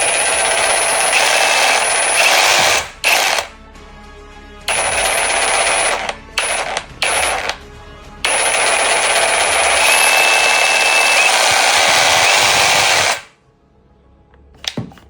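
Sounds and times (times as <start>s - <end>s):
cordless jigsaw running: 0.0s - 3.5s, 4.7s - 7.6s, 8.2s - 13.3s
background music: 0.0s - 15.0s.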